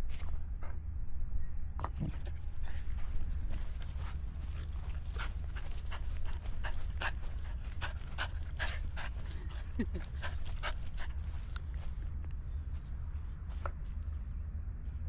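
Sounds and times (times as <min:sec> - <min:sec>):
steady low rumble: 0:00.0 - 0:15.0
puppy panting: 0:03.5 - 0:12.3.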